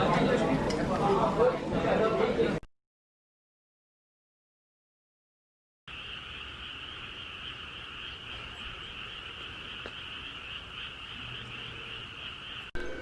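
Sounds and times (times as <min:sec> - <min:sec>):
frogs chorus: 0:05.9 - 0:13.0.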